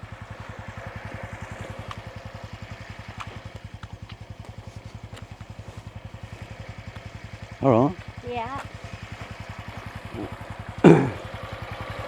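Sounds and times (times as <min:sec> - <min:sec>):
motorcycle engine idling: 0:00.0 - 0:12.0
faint sharp ticks: 0:01.6 - 0:02.2, 0:02.9 - 0:07.3.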